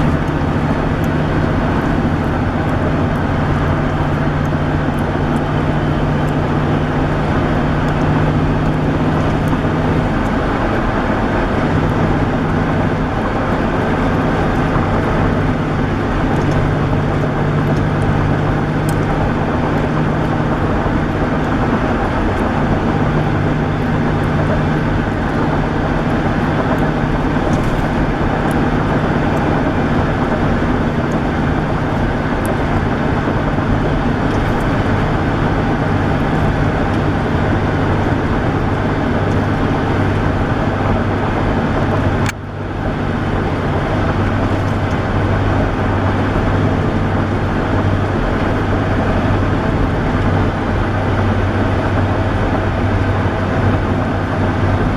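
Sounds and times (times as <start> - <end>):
car road and engine drone: 0.0 - 54.9.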